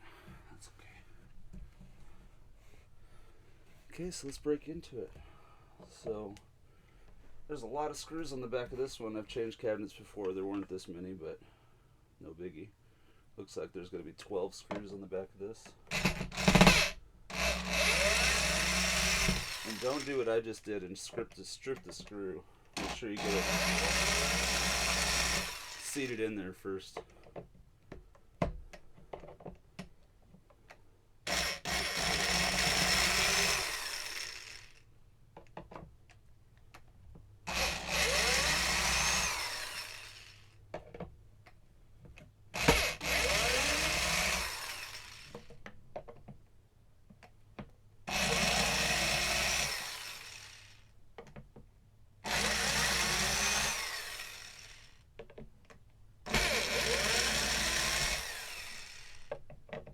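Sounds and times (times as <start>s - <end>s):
power drill backing out screws: 15.9s - 20.4s, 22.8s - 26.2s, 31.3s - 34.8s, 37.5s - 40.5s, 42.6s - 45.6s, 48.1s - 50.8s, 52.3s - 55.0s, 56.3s - 59.5s
handling clicks and knocks: 40.6s - 42.9s, 45.4s - 47.9s, 51.1s - 51.7s, 55.1s - 56.4s, 59.3s - 59.9s.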